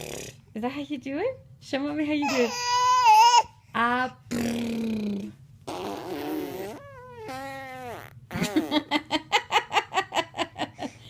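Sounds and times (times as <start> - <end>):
baby squealing: 2.2 - 3.5, 5.7 - 8.1
rhythmic mouth pulses: 4.3 - 8.7
baby blowing raspberries: 5.7 - 8.2.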